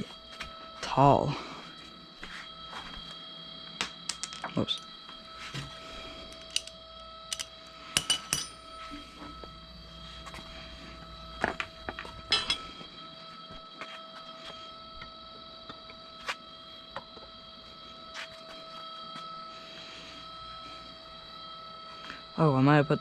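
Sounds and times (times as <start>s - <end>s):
faint high hum: 0.0s - 23.0s
metal parts clinking and knocking: 6.3s - 8.6s.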